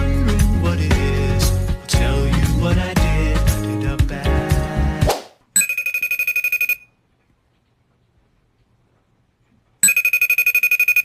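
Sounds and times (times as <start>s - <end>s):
alarm clock beeping: 5.6s - 6.9s, 9.8s - 11.0s.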